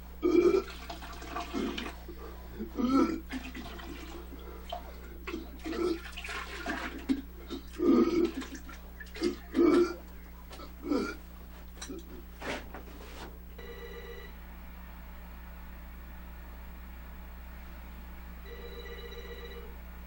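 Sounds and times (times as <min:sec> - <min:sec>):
steady low hum: 0:00.0 - 0:20.0
man belching: 0:00.2 - 0:02.0, 0:02.6 - 0:03.6, 0:05.2 - 0:06.1, 0:07.1 - 0:11.2.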